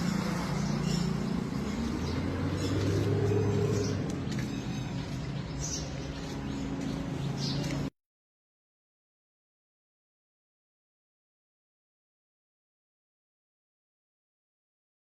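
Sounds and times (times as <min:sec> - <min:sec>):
vehicle engine running: 0:00.0 - 0:07.9.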